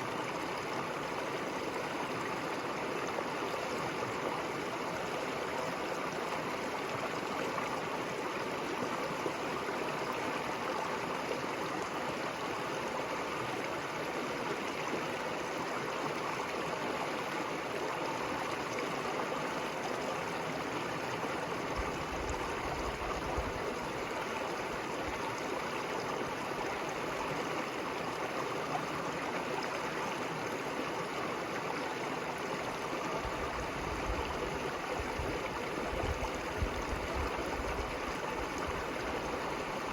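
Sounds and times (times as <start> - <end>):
river flowing over stones: 0.0 - 39.9.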